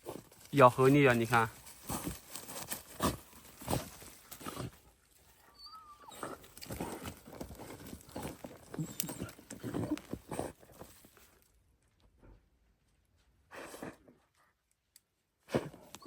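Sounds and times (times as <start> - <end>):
scraping and scuffling: 0.0 - 11.6
dog chewing and tearing root: 1.2 - 4.8, 6.1 - 11.2.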